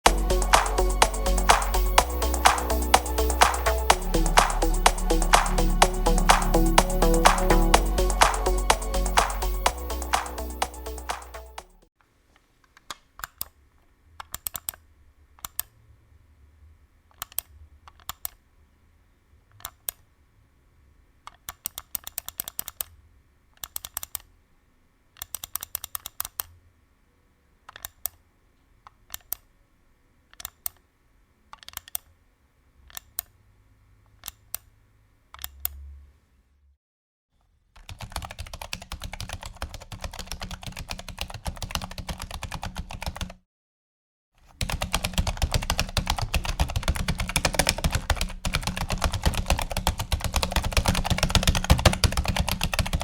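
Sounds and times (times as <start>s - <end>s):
mouse buttons clicking: 35.4s - 35.8s
keyboard keys clicking: 44.6s - 53.0s.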